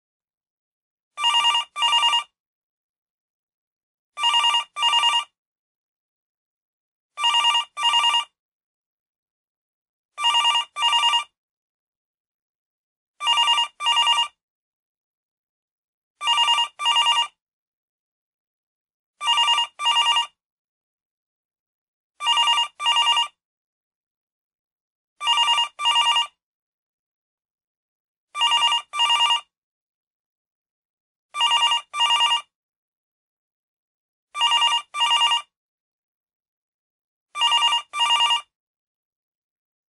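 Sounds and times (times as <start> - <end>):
telephone double ring: 37.4 - 38.5.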